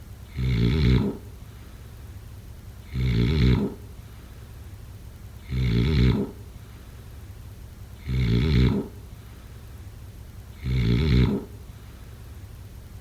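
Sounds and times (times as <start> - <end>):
loud rattling snores: 0.2 - 1.4, 2.8 - 4.0, 5.4 - 6.6, 8.0 - 9.3, 10.5 - 11.9.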